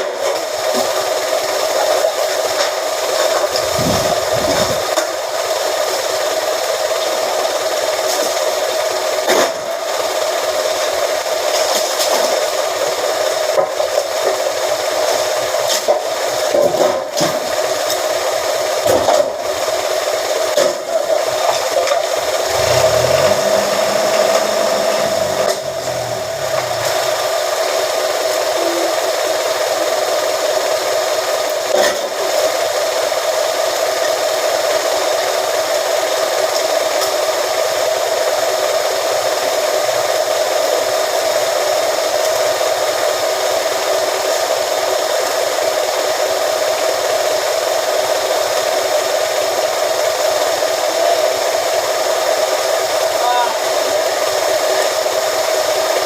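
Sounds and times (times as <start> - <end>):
metal press machine humming: 22.1 - 27.9.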